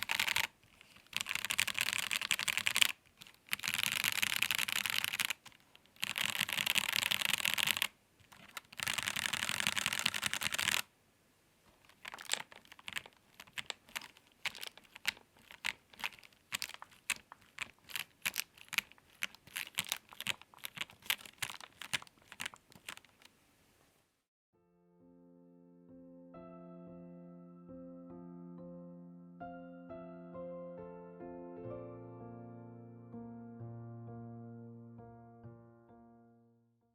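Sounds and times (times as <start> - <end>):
mechanical keyboard typing: 0.0 - 10.9, 11.8 - 23.3.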